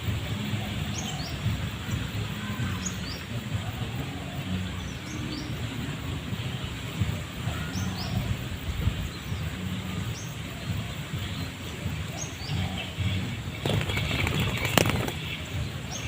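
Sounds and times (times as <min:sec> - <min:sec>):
bird wings flapping: 0:13.5 - 0:15.5.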